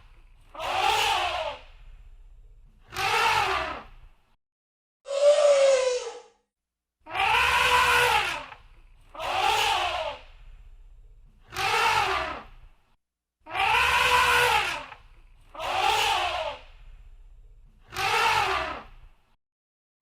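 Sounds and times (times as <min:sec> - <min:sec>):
elephant trumpeting: 0:07.1 - 0:08.6, 0:13.5 - 0:15.0, 0:17.9 - 0:18.9.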